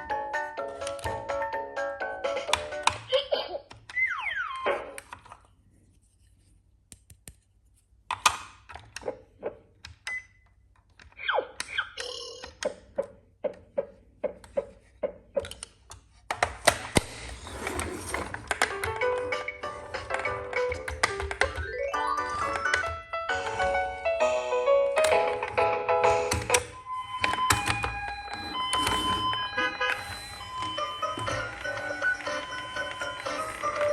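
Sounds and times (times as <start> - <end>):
music cues: 18.6 - 33.9.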